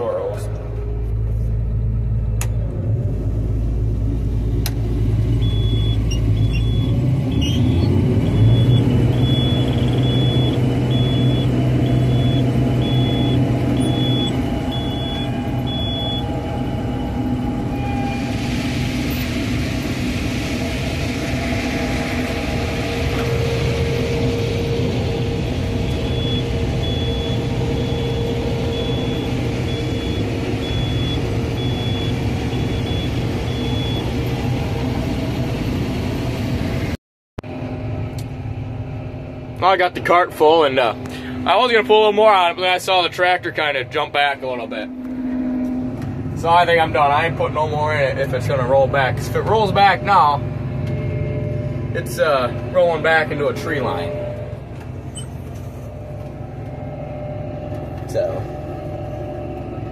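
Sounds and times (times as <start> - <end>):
combine harvester engine: 0.0 - 59.9
high beep: 5.4 - 16.4, 25.9 - 34.0, 53.6 - 55.4.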